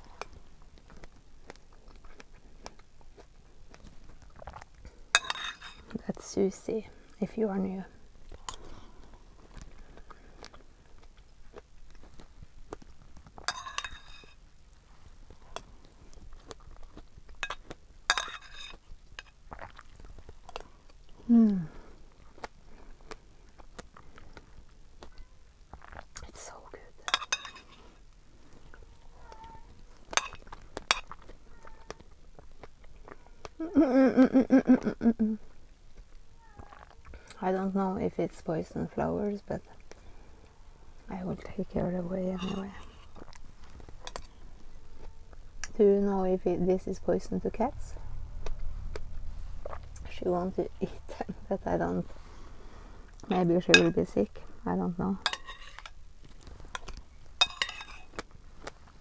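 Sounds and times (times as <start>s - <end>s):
close-up chewing and mouth sounds: 0.0s - 6.0s, 7.9s - 13.5s, 14.3s - 18.1s, 18.7s - 33.7s, 34.6s - 37.7s, 39.6s - 41.6s, 42.2s - 46.3s
cutlery clinking against dish: 5.2s - 5.9s, 13.4s - 14.4s, 17.4s - 19.4s, 27.1s - 28.0s, 30.1s - 31.2s, 42.4s - 44.4s, 53.3s - 54.1s, 55.2s - 56.0s, 56.7s - 58.2s.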